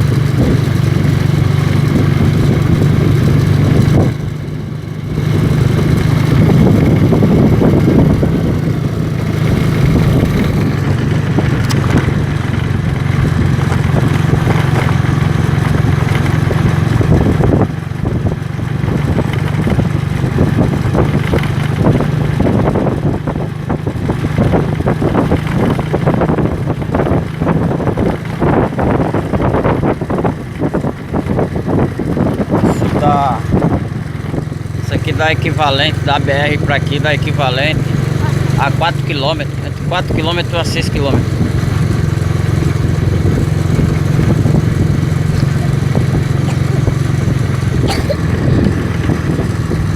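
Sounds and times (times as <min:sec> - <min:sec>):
vehicle engine running: 0:00.0 - 0:49.9
wind noise on microphone: 0:00.0 - 0:49.9.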